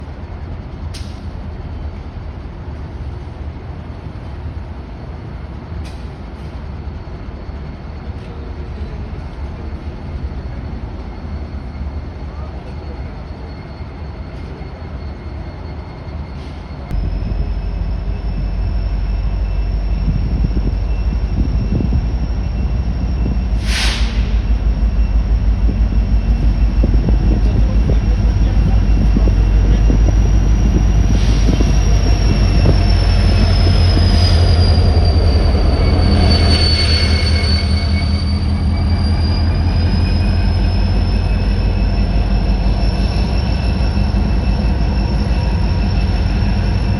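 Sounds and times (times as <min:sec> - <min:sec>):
freight train rumbling by: 0:00.0 - 0:46.9
short hiss: 0:23.6 - 0:24.4.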